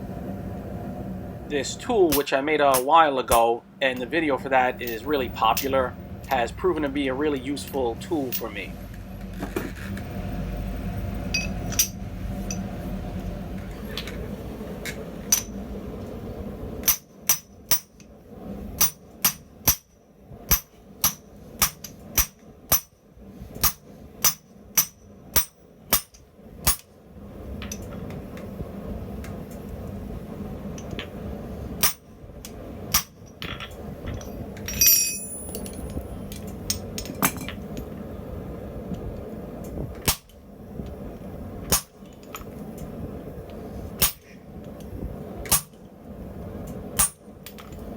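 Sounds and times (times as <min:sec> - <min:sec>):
hammer striking hot steel on anvil: 0:02.1 - 0:03.5, 0:04.8 - 0:05.8, 0:11.3 - 0:12.7, 0:16.8 - 0:18.0, 0:18.8 - 0:23.0, 0:23.6 - 0:26.9, 0:31.8 - 0:32.1, 0:32.9 - 0:33.3, 0:34.7 - 0:36.0, 0:40.0 - 0:40.3, 0:41.7 - 0:42.0, 0:44.0 - 0:44.3, 0:45.5 - 0:45.8, 0:47.0 - 0:47.3.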